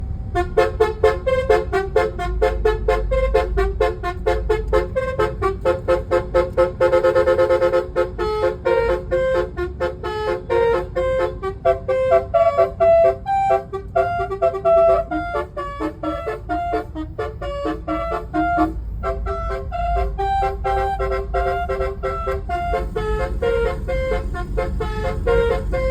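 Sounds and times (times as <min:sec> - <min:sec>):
steady low rumble: 0:00.0 - 0:25.9
musical car horn melody: 0:00.3 - 0:25.9.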